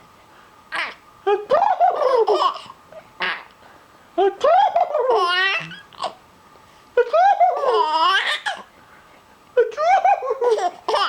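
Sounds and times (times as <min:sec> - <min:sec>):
baby laughing: 0:00.8 - 0:03.5, 0:04.5 - 0:06.2, 0:07.0 - 0:08.7, 0:09.6 - 0:11.0.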